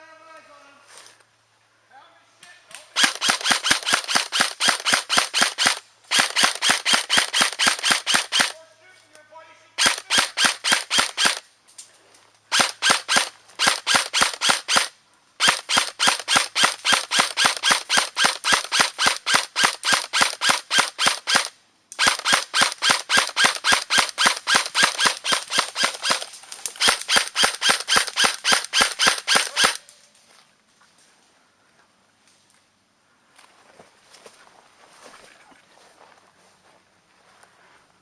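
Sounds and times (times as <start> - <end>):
airsoft gun firing: 2.9 - 8.6, 9.8 - 11.4, 12.5 - 29.9.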